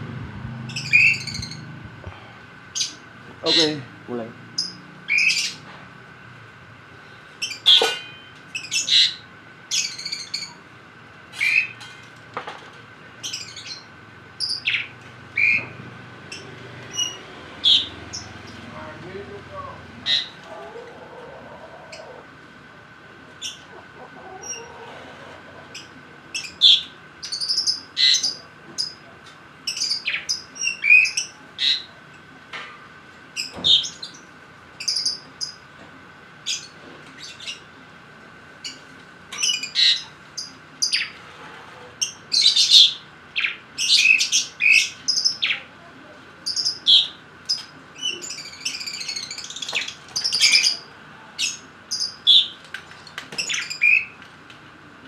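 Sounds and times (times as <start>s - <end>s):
lovebirds chirping: 0.6s - 1.7s, 16.3s - 18.6s.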